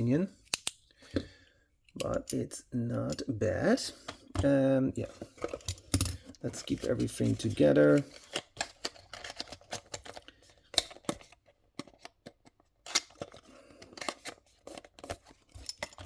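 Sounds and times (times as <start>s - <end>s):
model car and packaging clicking: 7.8s - 16.0s.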